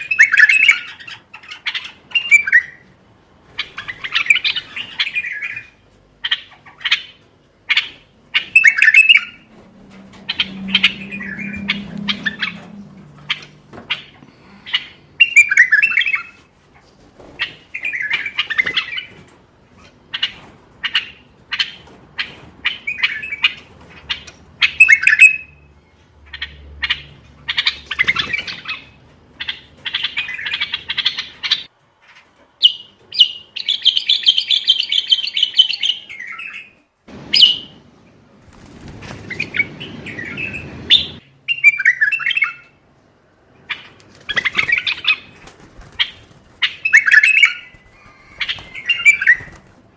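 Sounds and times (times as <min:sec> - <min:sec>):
bulbul singing: 0:07.7 - 0:16.2, 0:40.1 - 0:42.8.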